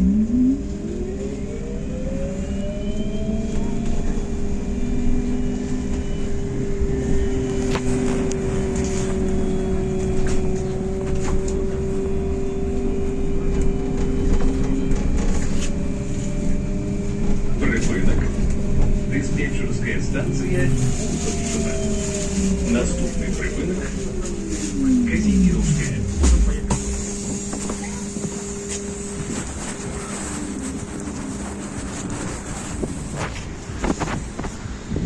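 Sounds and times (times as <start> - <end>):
road rumble: 0.0 - 35.0
electric motor whining: 24.1 - 33.1.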